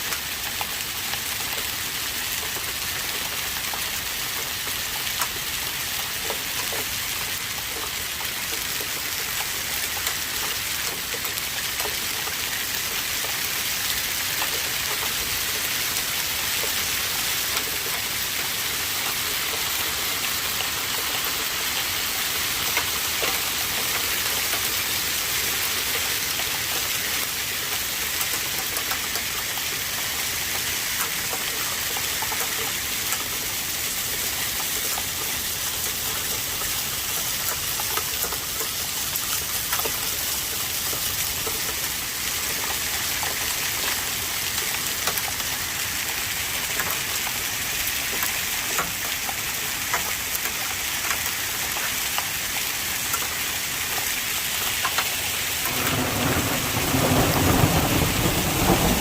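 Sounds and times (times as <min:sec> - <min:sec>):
raindrops ticking: 0:00.1 - 0:59.0
heavy rain hissing: 0:52.4 - 0:59.0.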